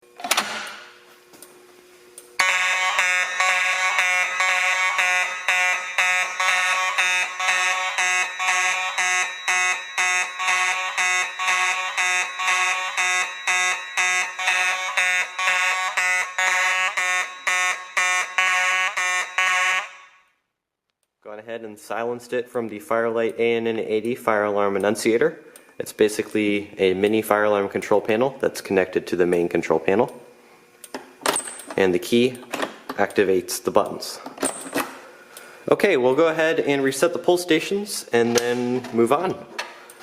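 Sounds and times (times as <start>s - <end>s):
fire alarm horns pulsing: 2.4s - 20.4s.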